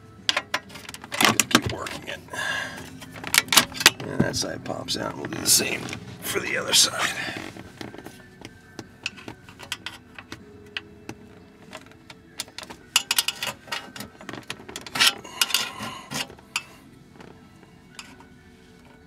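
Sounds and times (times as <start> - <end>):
screwdrivers prying plastic: 9.0 - 16.7.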